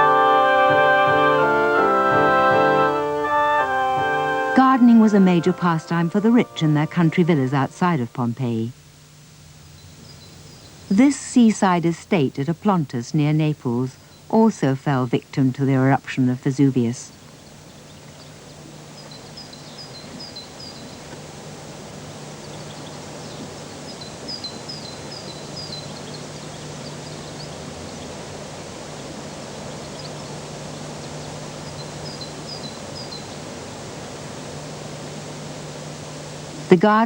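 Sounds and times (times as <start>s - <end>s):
low hum: 0.0s - 9.8s
steady hiss: 0.0s - 37.0s
small bird chirping: 9.7s - 11.0s, 17.0s - 21.1s, 22.4s - 28.1s, 29.8s - 33.4s.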